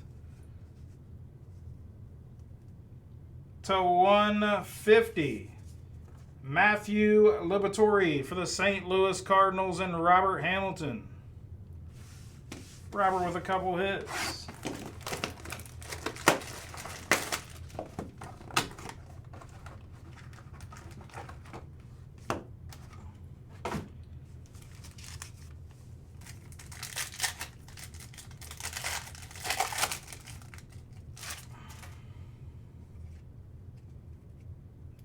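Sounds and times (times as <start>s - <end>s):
plastic wrappers crinkling: 14.4s - 21.6s, 24.4s - 32.0s.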